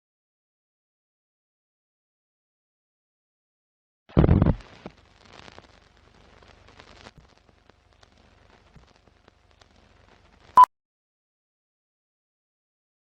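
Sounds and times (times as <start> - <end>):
faint crackling with clicks: 4.4 - 10.6.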